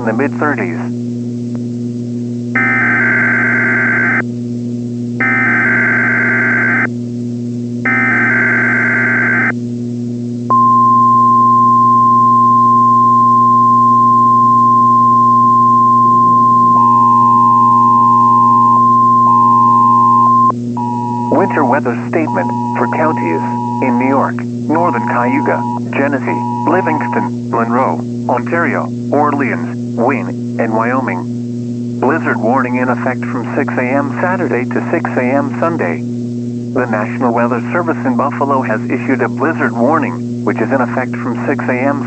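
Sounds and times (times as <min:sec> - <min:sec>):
steady hum: 0:00.0 - 0:42.0
warning alarm tone: 0:02.6 - 0:04.3, 0:05.2 - 0:06.9, 0:07.8 - 0:09.5, 0:10.5 - 0:31.2
lower tones: 0:10.5 - 0:28.5
screeching digital data bursts: 0:19.5 - 0:27.3.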